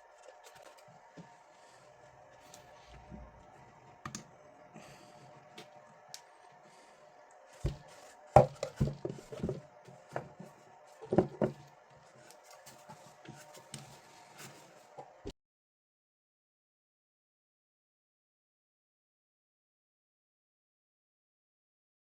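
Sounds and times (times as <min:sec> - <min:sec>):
faint steady hum: 0:00.0 - 0:15.3.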